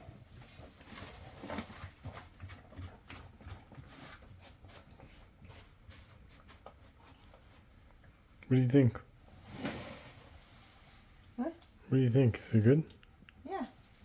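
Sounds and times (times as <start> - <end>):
rustling: 0.0 - 8.3, 9.2 - 11.8.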